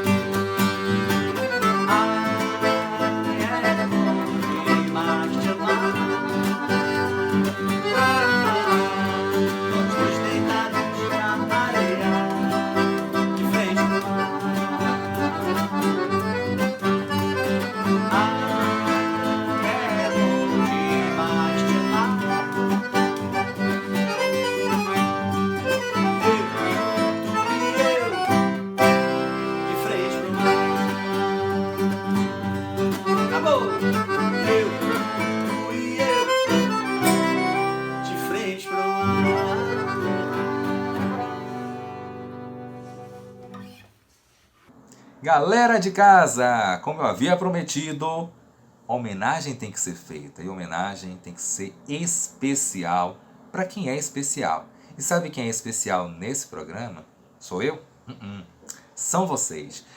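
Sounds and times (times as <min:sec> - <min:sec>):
band playing: 0:00.0 - 0:43.6
accordion: 0:00.0 - 0:43.7
guitar: 0:00.0 - 0:44.0.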